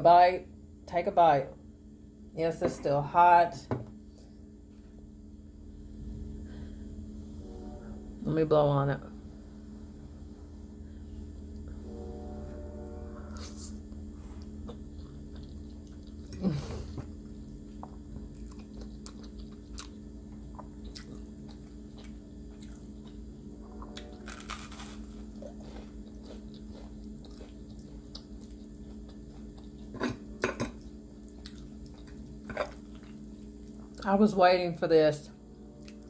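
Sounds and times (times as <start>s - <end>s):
person chewing spaghetti: 13.3s - 34.0s.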